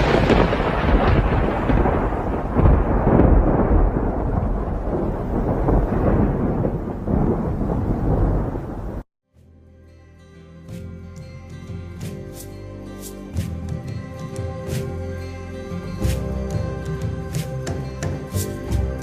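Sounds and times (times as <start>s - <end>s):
loud deep rumbling: 0.0s - 9.0s.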